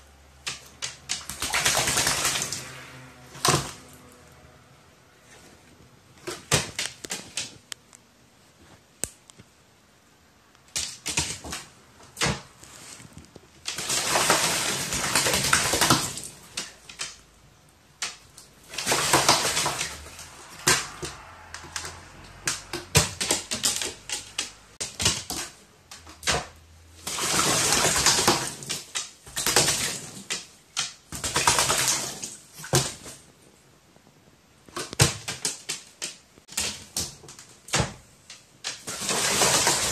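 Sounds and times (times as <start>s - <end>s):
bird splashing in water: 0.5s - 3.9s, 13.7s - 17.2s, 18.0s - 33.1s, 38.6s - 39.9s.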